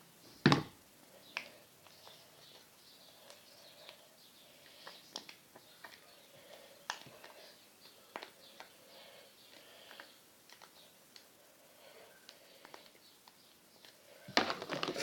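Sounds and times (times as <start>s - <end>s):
faint chirping: 0.0s - 14.4s
faint sharp clicks and taps: 4.6s - 8.8s.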